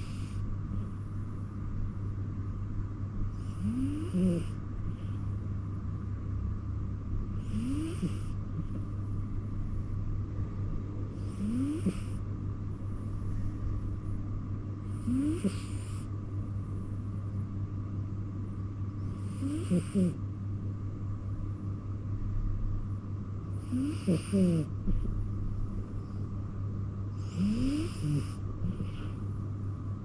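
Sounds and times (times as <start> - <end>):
cat snoring: 0.0 - 0.4, 3.4 - 5.1, 7.4 - 8.8, 11.2 - 12.2, 14.9 - 16.1, 19.1 - 20.2, 23.6 - 25.0, 27.2 - 29.2
steady low hum: 0.0 - 30.0.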